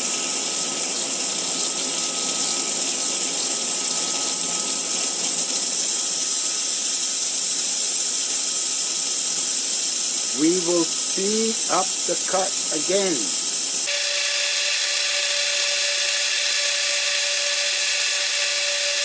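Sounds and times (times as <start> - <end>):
dense sparking hiss: 0.0 - 14.4.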